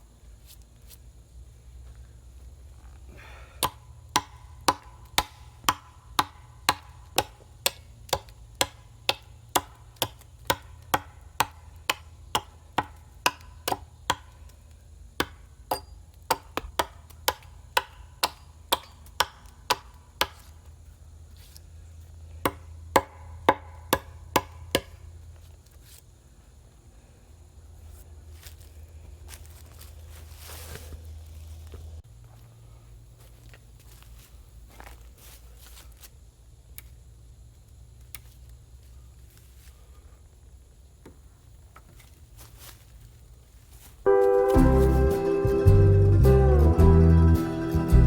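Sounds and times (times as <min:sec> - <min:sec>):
hand tool striking wood: 0:03.6 - 0:14.6, 0:15.2 - 0:20.6, 0:22.4 - 0:25.0.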